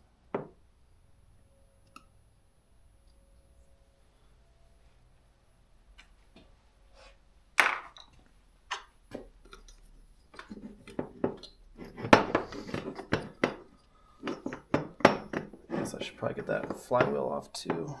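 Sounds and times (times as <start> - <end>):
metal tools clinking on a workbench: 9.5 - 18.0.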